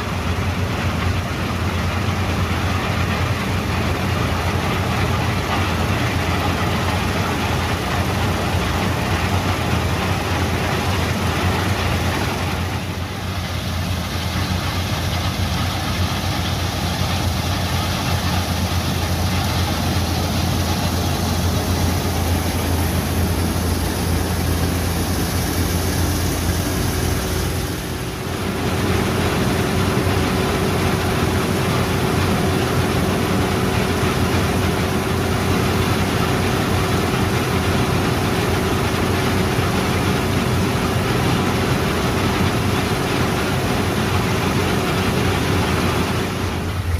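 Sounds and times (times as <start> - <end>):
combine harvester engine hum: 0.0 - 46.9
mechanical rush: 6.1 - 46.9.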